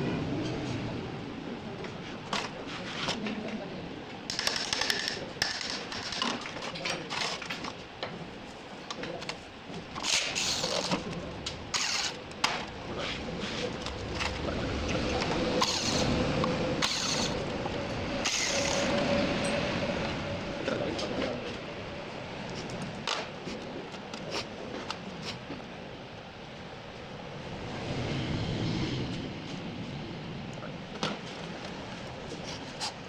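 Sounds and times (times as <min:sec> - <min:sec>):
steady whining tone: 0:07.4 - 0:32.4.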